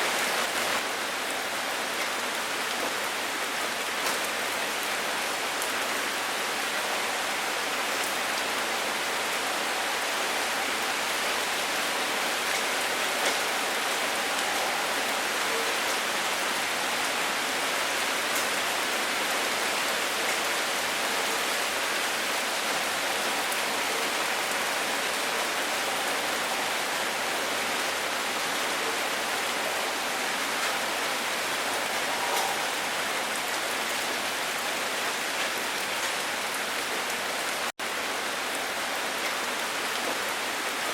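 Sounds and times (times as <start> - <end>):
steady rain hiss: 0.0 - 40.9.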